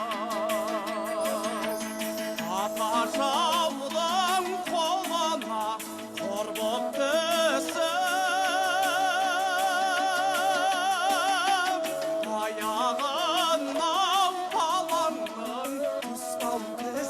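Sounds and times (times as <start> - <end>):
person singing folk song: 0.0 - 17.0
plucked string instrument: 0.0 - 17.0.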